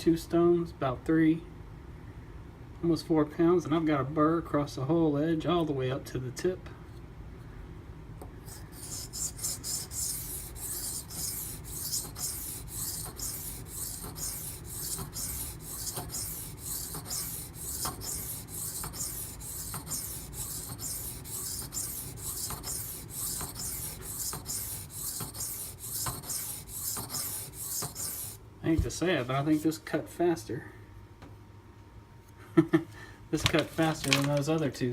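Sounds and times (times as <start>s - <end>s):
knife scraping on whetstone: 8.4s - 28.4s.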